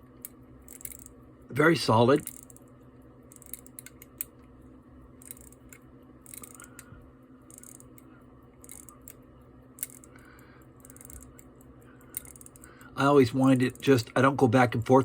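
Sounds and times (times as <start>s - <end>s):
pocket watch winding clicks: 0.2s - 1.1s, 2.2s - 2.6s, 3.3s - 4.3s, 5.2s - 6.9s, 7.5s - 9.2s, 9.8s - 12.9s.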